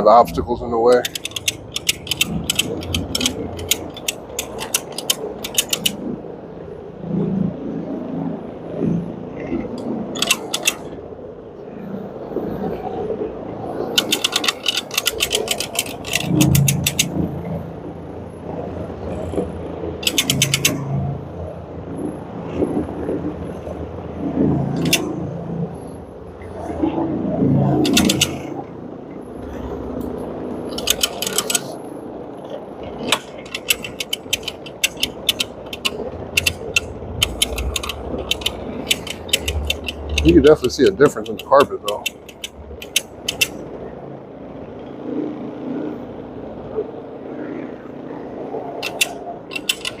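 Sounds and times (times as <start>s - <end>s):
rapid mechanical clicking: 0.0s - 6.2s, 9.4s - 11.0s, 13.7s - 17.6s, 19.0s - 21.0s, 24.7s - 25.3s, 27.6s - 28.7s, 29.5s - 31.9s, 32.8s - 43.7s, 48.7s - 50.0s
low hum: 0.0s - 50.0s.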